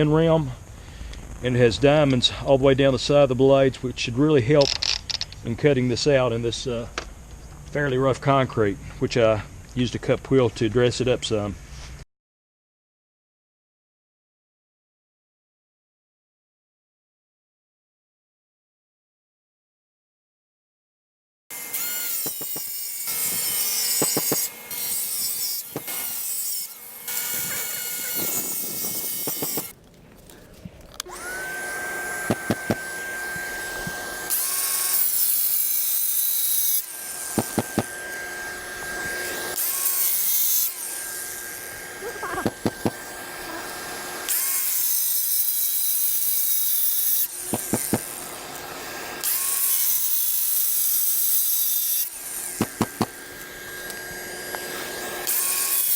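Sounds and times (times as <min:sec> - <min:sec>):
angle grinder motor whine: 0:21.5 - 0:29.8, 0:31.0 - 0:44.8, 0:47.2 - 0:49.8, 0:52.0 - 0:55.7
gritty rasp of cutting concrete: 0:21.8 - 0:29.8, 0:31.3 - 0:55.9.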